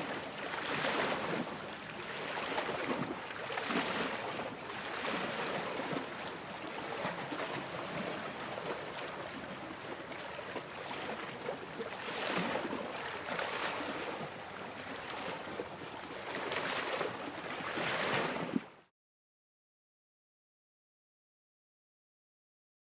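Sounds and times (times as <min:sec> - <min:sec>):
waves splashing against rocks: 0:00.0 - 0:09.9, 0:10.7 - 0:15.6.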